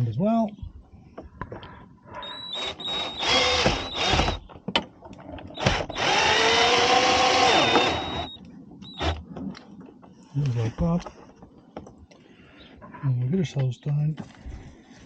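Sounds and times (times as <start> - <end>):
cordless drill driving screw: 2.4 - 4.5, 5.6 - 9.2.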